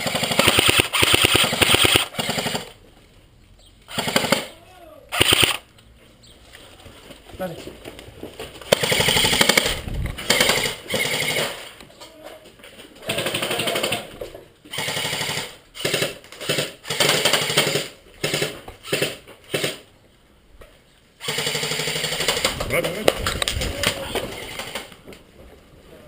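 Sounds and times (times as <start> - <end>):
airsoft gun bursts: 0.0 - 2.7, 3.9 - 5.6, 8.7 - 11.7, 14.7 - 19.8, 21.2 - 23.0, 23.8 - 25.0.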